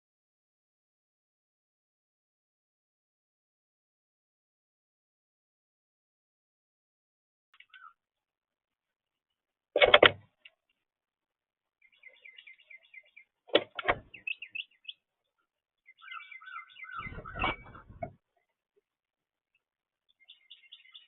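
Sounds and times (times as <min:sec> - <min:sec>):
small birds chirping: 0:07.6 - 0:08.1, 0:11.7 - 0:18.7, 0:19.5 - 0:21.0.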